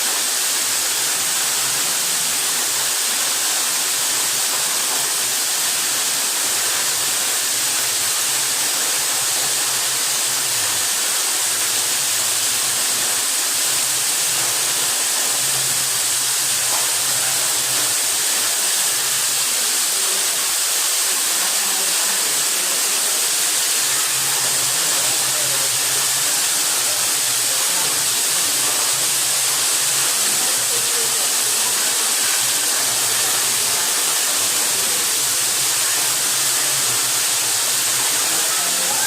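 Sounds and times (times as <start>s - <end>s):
waterfall rushing: 0.0s - 39.0s.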